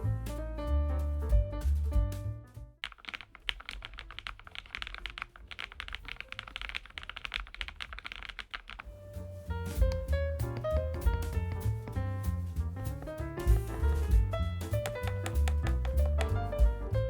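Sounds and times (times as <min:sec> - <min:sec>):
fast typing on keyboard: 0:02.8 - 0:08.9, 0:09.8 - 0:12.1, 0:12.9 - 0:16.7.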